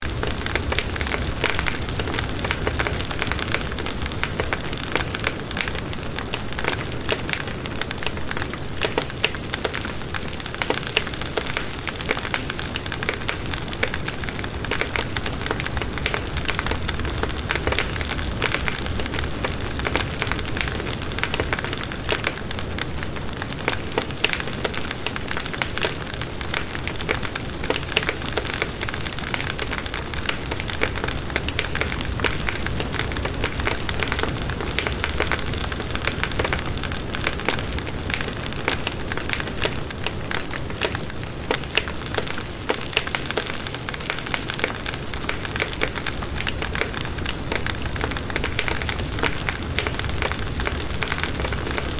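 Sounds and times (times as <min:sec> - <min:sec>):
bonfire crackling: 0:00.0 - 0:51.9
low rumble of flames: 0:00.1 - 0:51.9.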